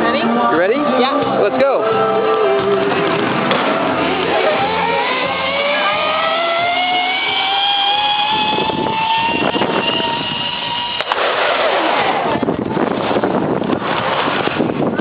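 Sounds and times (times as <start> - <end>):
rough rushing noise: 1.7 - 15.0
pulley wheels whining on cable: 2.5 - 11.2.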